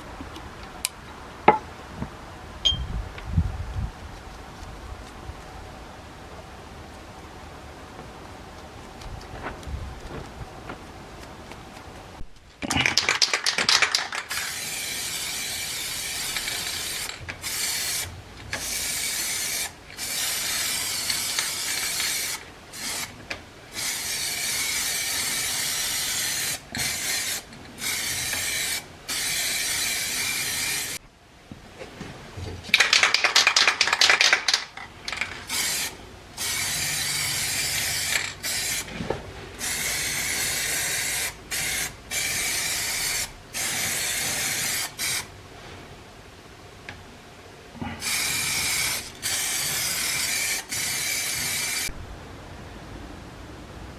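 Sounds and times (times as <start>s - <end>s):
spray can ball rattling: 12.7s - 31.0s, 32.7s - 38.9s, 39.6s - 45.3s, 48.0s - 51.9s
aerosol spray bursts: 13.0s - 31.0s, 35.5s - 38.9s, 39.6s - 45.3s, 48.0s - 51.9s.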